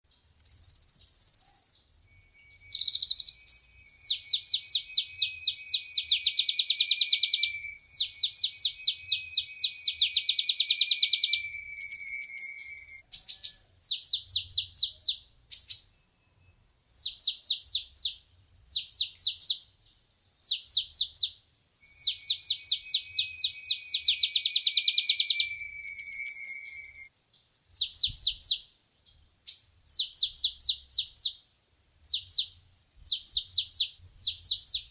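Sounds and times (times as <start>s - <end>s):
sunbird singing trilled phrases: 0.2s - 19.8s, 20.4s - 34.9s
sharp bird chips: 0.4s - 1.8s, 2.6s - 16.0s, 22.0s - 27.0s.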